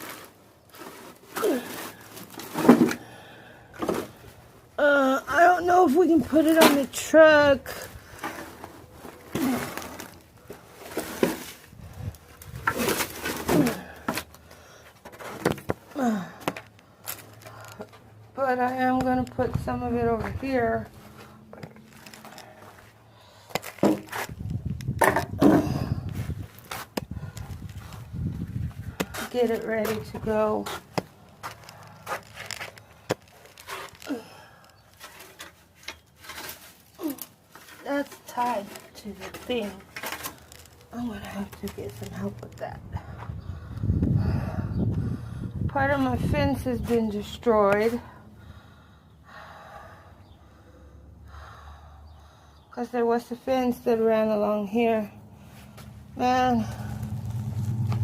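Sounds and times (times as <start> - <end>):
debris knocking and scraping: 0.0 - 3.1, 15.0 - 18.0, 23.5 - 34.4
yard debris being handled: 0.0 - 42.7
person grunting: 16.0 - 16.4.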